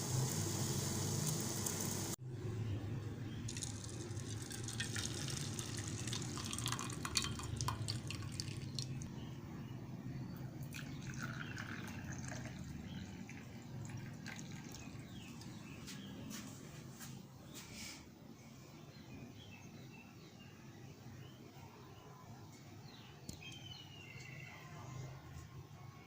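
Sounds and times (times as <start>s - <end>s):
small clicks and splashes: 3.5s - 9.0s
liquid dripping and trickling: 3.5s - 9.1s, 10.6s - 15.6s.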